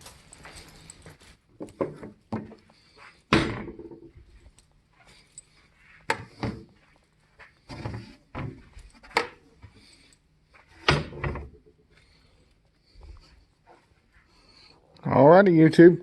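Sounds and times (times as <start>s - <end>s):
chairs knocking and thudding: 3.3s - 4.1s, 6.1s - 6.8s, 7.7s - 9.4s, 10.8s - 11.7s.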